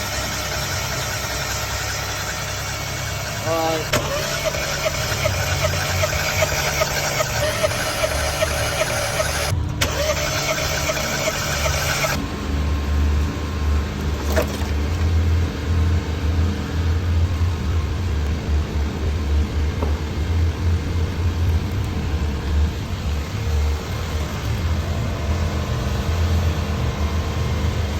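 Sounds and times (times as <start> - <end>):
car engine idling unevenly: 0.0 - 27.9
high whirring noise: 3.4 - 12.2.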